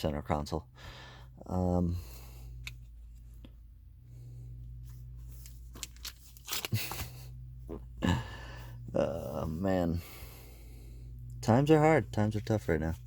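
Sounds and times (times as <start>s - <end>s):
steady low hum: 0.0s - 13.0s
card pack crinkling: 5.4s - 7.0s
wrapper tearing and rustling: 5.7s - 7.0s.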